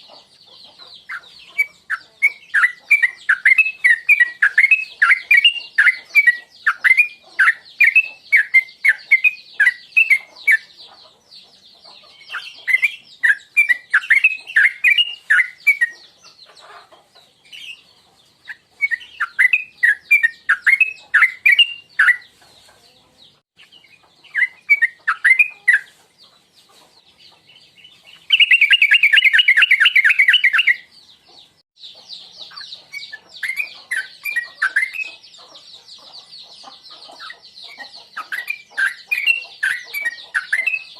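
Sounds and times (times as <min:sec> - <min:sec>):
loud bird trill: 0:00.0 - 0:11.0, 0:11.8 - 0:16.8, 0:18.5 - 0:22.4, 0:23.6 - 0:26.0, 0:27.3 - 0:40.9
bird singing bubbly whistles: 0:28.3 - 0:30.8.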